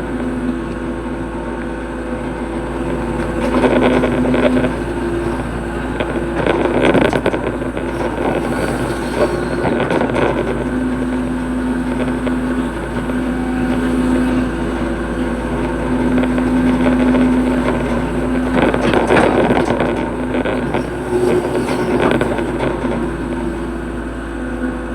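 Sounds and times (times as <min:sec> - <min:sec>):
excavator diesel engine drone: 0:00.0 - 0:24.9.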